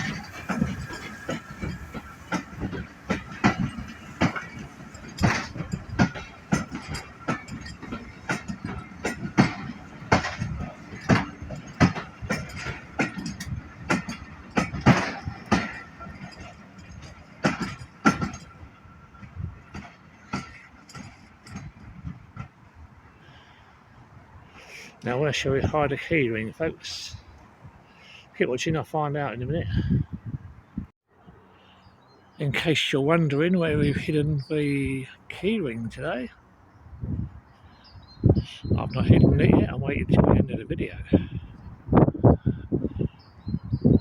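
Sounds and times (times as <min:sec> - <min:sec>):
steam train knocks and clicks: 0:00.0 - 0:22.6
steam train rumble: 0:00.0 - 0:28.7.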